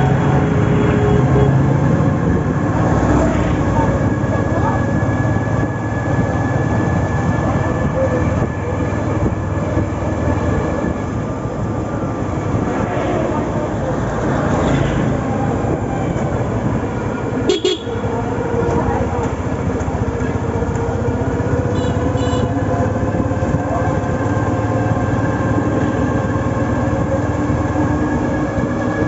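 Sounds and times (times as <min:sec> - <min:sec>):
vehicle horn: 0:00.0 - 0:01.7, 0:17.4 - 0:18.1, 0:21.6 - 0:22.7.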